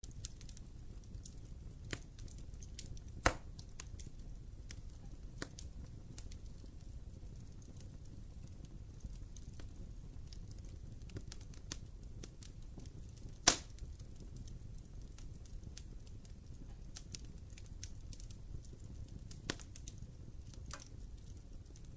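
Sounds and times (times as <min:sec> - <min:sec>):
fire crackling: 0:00.0 - 0:21.9
low rumble of flames: 0:00.0 - 0:21.9
loud sharp pops: 0:03.2 - 0:03.5, 0:13.4 - 0:13.8.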